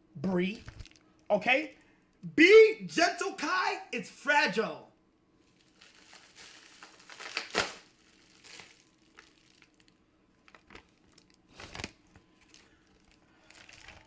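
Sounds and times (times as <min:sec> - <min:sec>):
package wrapping crinkling and tearing: 0:00.6 - 0:01.0, 0:05.5 - 0:14.0.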